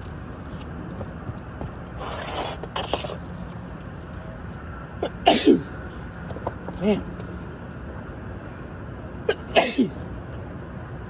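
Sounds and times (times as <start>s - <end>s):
asphalt shingle scraping: 0.0s - 8.1s.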